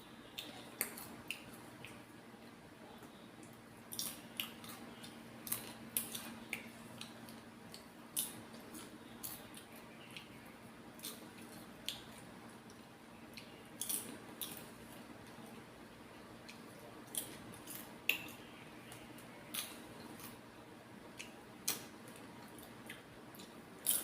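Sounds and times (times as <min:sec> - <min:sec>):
faint steady hum: 0:00.0 - 0:24.0
person crunching popcorn: 0:13.8 - 0:14.7.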